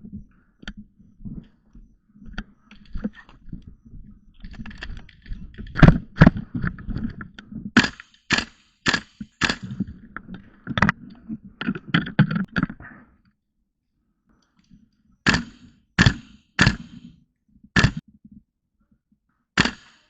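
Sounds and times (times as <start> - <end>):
airsoft rifle shots: 7.8 - 9.8, 15.3 - 17.1, 17.8 - 18.0, 19.6 - 20.0.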